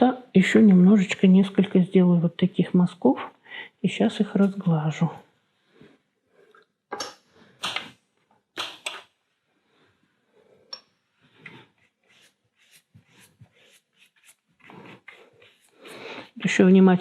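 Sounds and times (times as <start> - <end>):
brush strokes on paper: 11.3 - 16.6.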